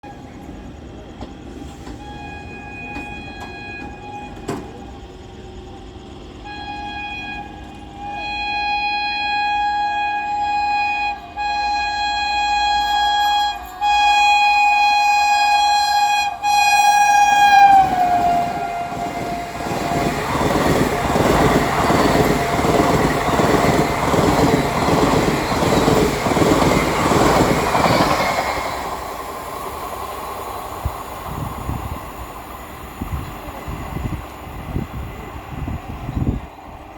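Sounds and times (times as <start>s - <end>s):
train wheel clatter: 0.4s - 5.4s, 15.3s - 36.9s
locomotive horn: 1.8s - 4.9s, 6.3s - 28.4s.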